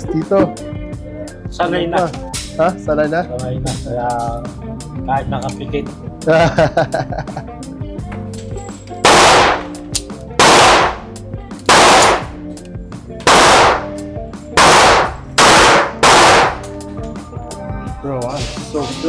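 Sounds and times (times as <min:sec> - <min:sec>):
pistol shots with echo: 0:09.0 - 0:11.1, 0:11.7 - 0:12.4, 0:13.3 - 0:14.0, 0:14.6 - 0:16.8.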